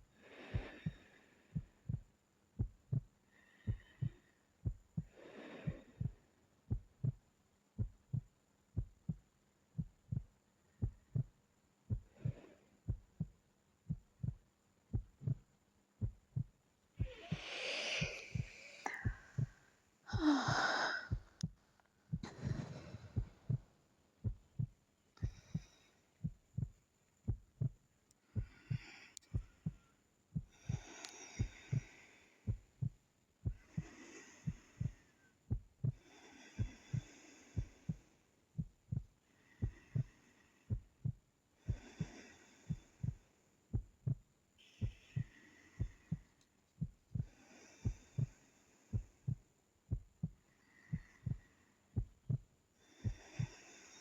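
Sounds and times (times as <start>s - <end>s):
woman breathing in sleep: 0.0s - 7.2s, 11.9s - 13.3s, 16.0s - 26.7s, 28.2s - 43.8s, 44.6s - 49.4s, 50.2s - 54.0s
heartbeat-like double thump: 1.6s - 7.2s, 7.8s - 20.2s, 21.1s - 29.8s, 30.4s - 31.9s, 32.5s - 33.9s, 34.5s - 36.0s, 38.6s - 40.1s, 40.7s - 42.1s, 42.7s - 53.5s
voiced sigh: 17.0s - 21.5s.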